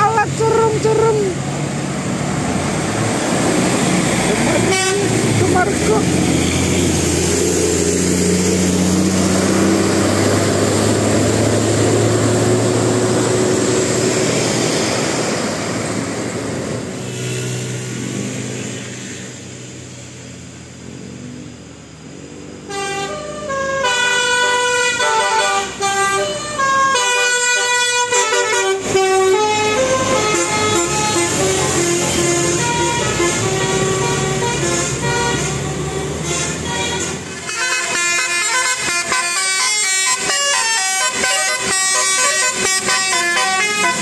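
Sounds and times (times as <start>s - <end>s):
bus engine running: 0.0s - 44.0s
multi-tone air horn melody: 4.6s - 5.6s, 22.7s - 44.0s.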